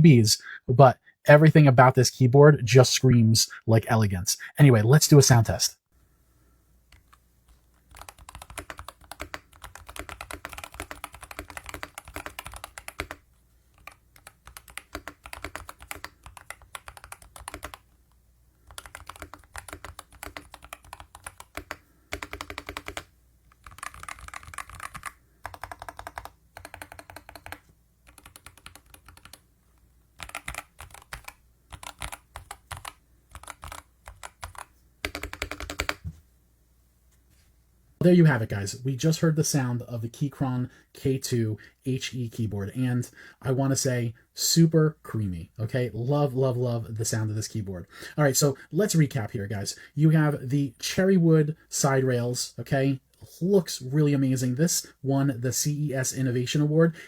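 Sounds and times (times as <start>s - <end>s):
keyboard typing: 6.9s - 17.9s, 18.6s - 29.4s, 30.2s - 36.2s.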